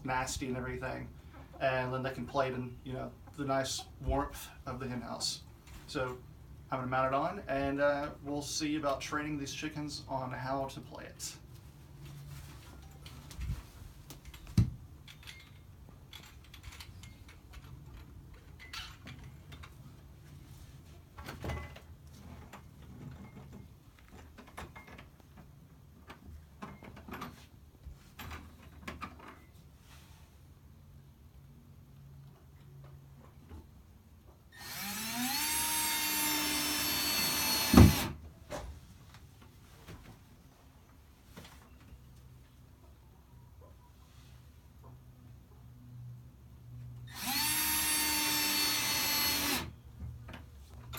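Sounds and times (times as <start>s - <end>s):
power drill whining: 34.6s - 38.2s, 47.1s - 49.7s.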